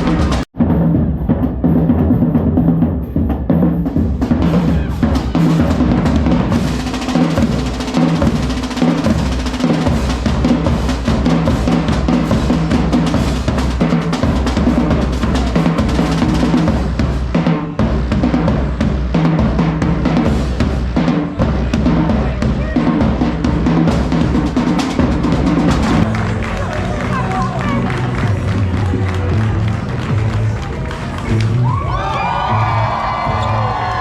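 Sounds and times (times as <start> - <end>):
drum kit playing: 0.0 - 31.4
low bass line: 25.7 - 33.8.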